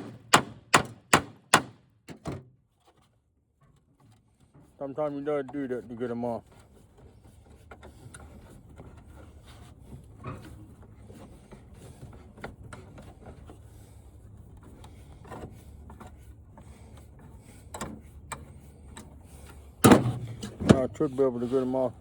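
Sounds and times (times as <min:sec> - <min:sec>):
steady low hum: 0:18.6 - 0:22.0.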